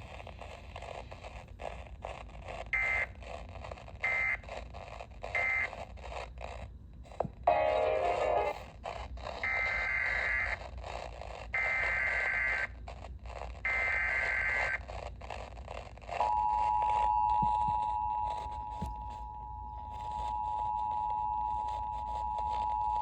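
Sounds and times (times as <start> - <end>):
two-tone attention signal: 7.5 - 8.6, 16.2 - 23.0.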